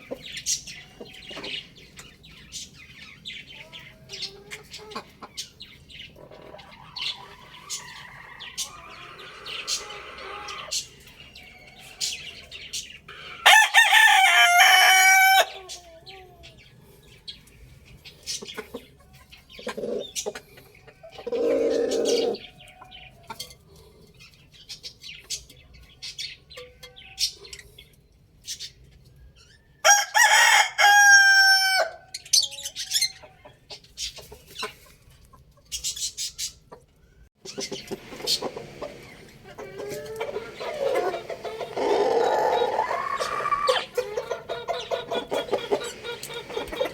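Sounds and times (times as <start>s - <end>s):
chicken clucking and chirping: 0.0s - 46.9s
rooster crowing: 13.2s - 15.6s, 29.8s - 32.1s, 40.2s - 43.9s.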